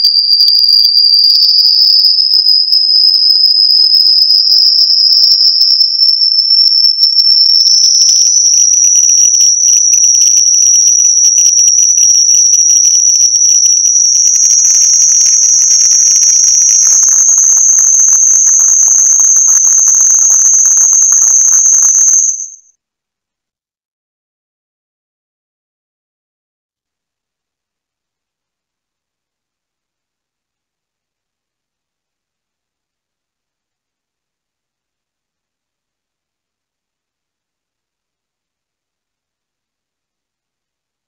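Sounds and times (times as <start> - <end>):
high-pitched electronic test tone: 0.0 - 22.7
faint crackly hiss: 8.2 - 22.7.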